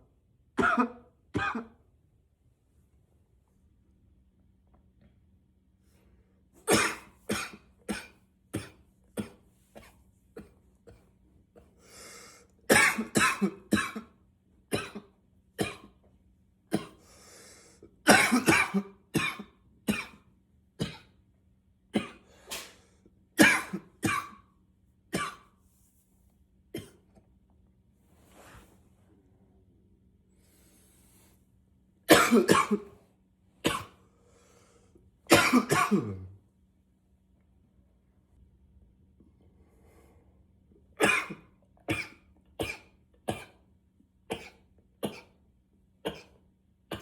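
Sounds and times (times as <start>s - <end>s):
man coughing: 0.6s - 1.8s, 6.7s - 11.0s, 12.7s - 15.9s, 18.0s - 20.2s, 23.4s - 24.4s, 32.1s - 33.0s, 35.3s - 36.4s, 41.0s - 43.6s.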